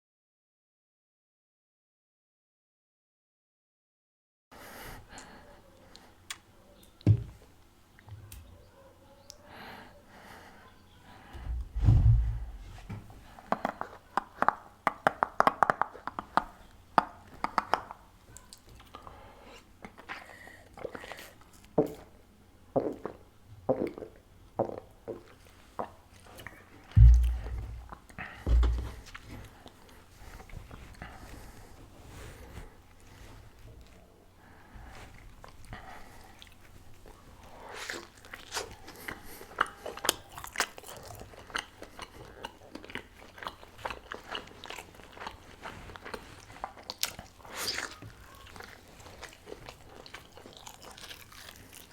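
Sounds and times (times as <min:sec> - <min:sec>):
low thumps: 0:11.4 - 0:13.1, 0:27.0 - 0:29.1
biting and chewing pastry: 0:19.8 - 0:22.2, 0:35.0 - 0:51.9
wet mouth clicks: 0:27.0 - 0:27.8.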